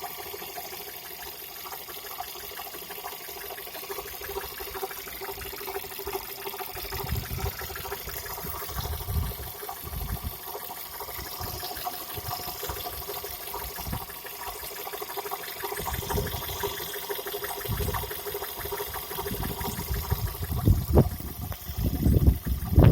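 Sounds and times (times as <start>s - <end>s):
fast ticking from engine: 0.0s - 22.9s
car engine running with whine: 6.8s - 22.9s.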